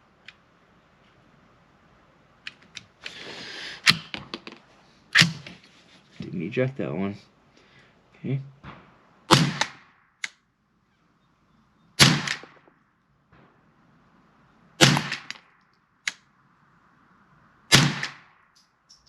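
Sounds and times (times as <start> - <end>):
rifle shots with echo: 8.6 - 10.1, 12.0 - 13.7, 14.8 - 15.6, 17.7 - 18.4
small sharp clicks: 9.6 - 10.4, 15.2 - 16.3.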